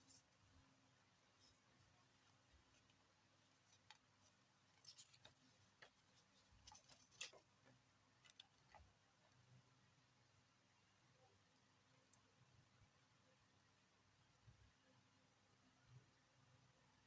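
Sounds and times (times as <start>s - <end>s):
room hum: 0.0s - 17.0s
small clicks and taps: 3.6s - 9.4s.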